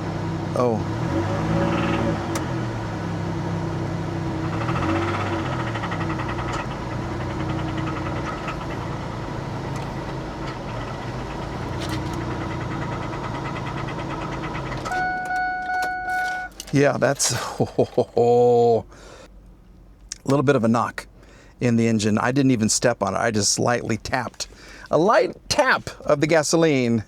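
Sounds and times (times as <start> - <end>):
car engine revving lightly: 0.0 - 16.7
rapid engine ticking knock: 4.5 - 14.9.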